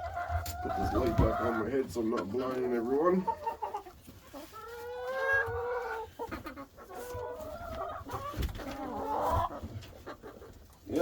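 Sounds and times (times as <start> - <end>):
hens calling and clucking: 0.0 - 11.0.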